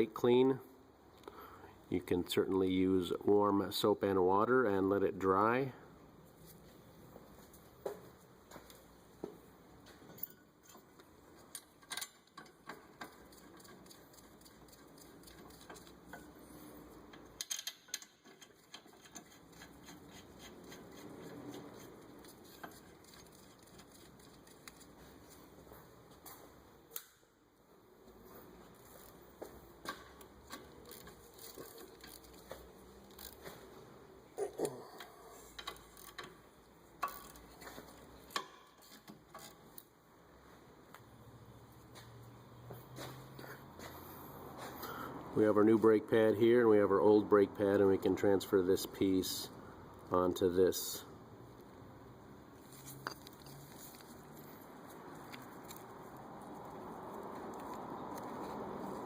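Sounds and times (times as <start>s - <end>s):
hand tools clicking and tapping: 17.0s - 25.0s, 37.0s - 39.5s.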